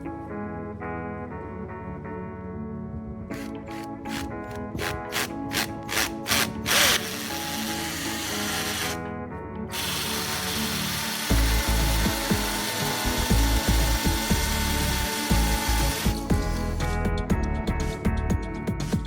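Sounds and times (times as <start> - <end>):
background music with steady beat: 0.0 - 19.0
electric drill boring into wall: 3.3 - 9.0, 9.7 - 16.7.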